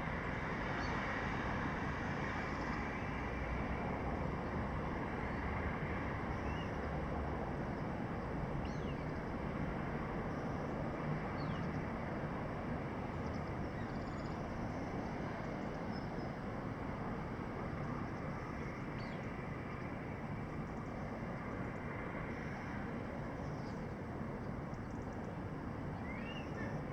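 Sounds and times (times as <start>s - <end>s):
traffic hum and hiss: 0.0s - 26.9s.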